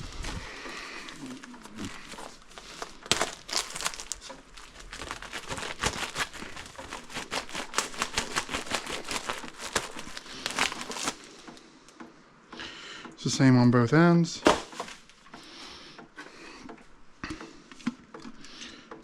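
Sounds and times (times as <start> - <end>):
plastic packaging crinkling: 0.0 - 11.5, 14.4 - 15.2.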